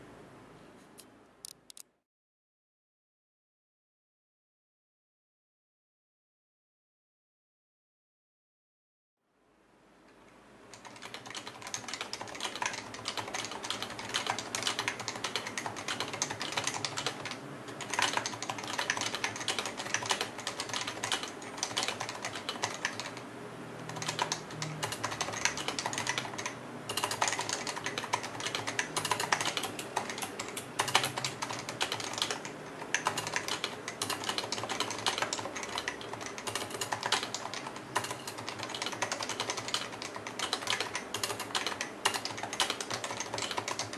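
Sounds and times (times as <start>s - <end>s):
fast typing on keyboard: 10.7s - 23.2s, 23.9s - 43.9s.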